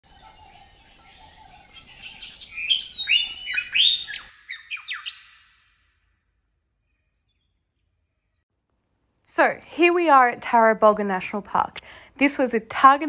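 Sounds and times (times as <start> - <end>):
faint birdsong: 0.0 - 8.5
bird whistling song: 0.1 - 8.3.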